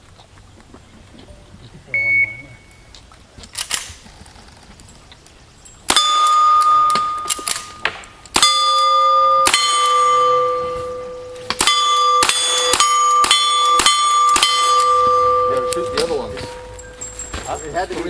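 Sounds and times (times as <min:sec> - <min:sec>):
steel plates ringing: 0:05.6 - 0:18.0
rifle shots: 0:05.8 - 0:16.7.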